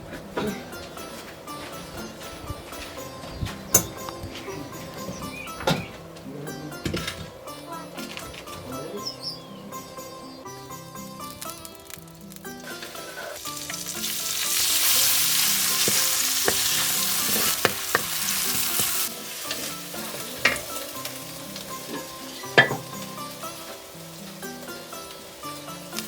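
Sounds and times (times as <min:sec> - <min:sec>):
food frying in hot oil: 0:13.4 - 0:26.0
utensil clicking on pan: 0:13.5 - 0:23.4.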